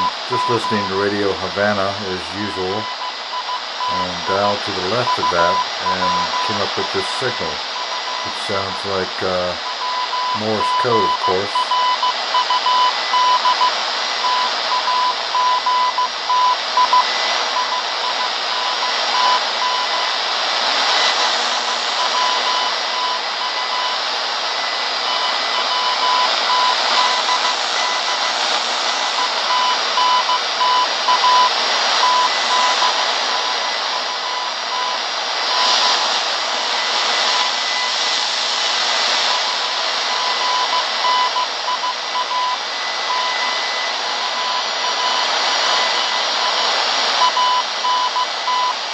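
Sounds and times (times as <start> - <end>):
radio static hiss: 0.0 - 48.9
morse code beeps: 2.8 - 4.1, 5.0 - 6.6, 9.6 - 20.0, 29.1 - 35.9, 39.3 - 48.8.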